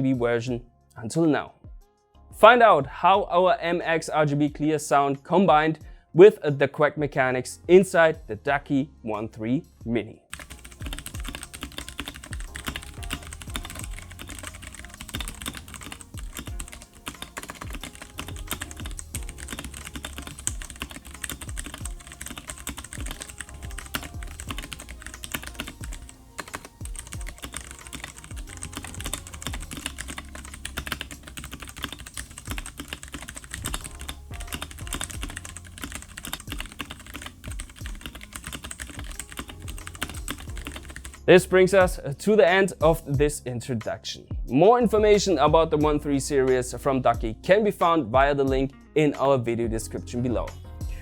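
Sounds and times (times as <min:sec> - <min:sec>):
mechanical keyboard typing: 0:10.3 - 0:41.2.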